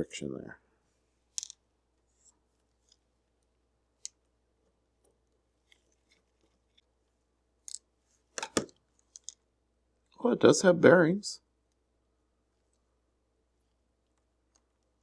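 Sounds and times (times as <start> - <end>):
small metal parts clicking: 1.4 - 1.6.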